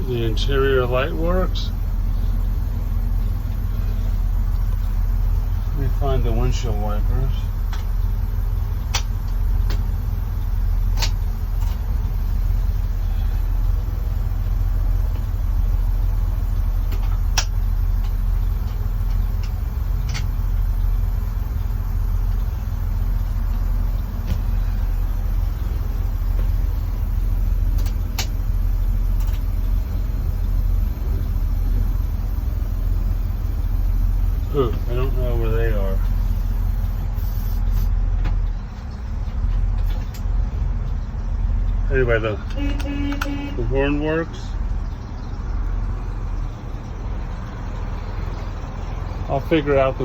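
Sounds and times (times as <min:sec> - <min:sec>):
truck engine idling: 0:00.0 - 0:50.0
dashboard switches clicking: 0:08.8 - 0:09.9, 0:10.9 - 0:11.2, 0:27.7 - 0:28.4, 0:42.4 - 0:43.5.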